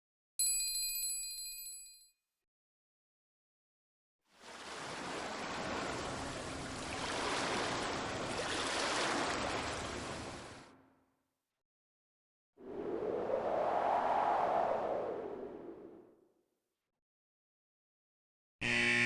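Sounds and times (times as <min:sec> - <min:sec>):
rushing water-like noise: 0:04.4 - 0:10.6.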